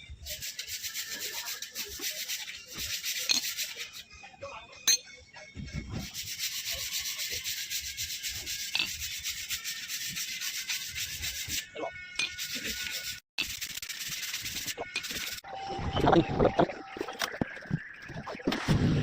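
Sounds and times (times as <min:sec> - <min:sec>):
brake disc being sanded: 0:00.3 - 0:04.1, 0:06.0 - 0:15.5.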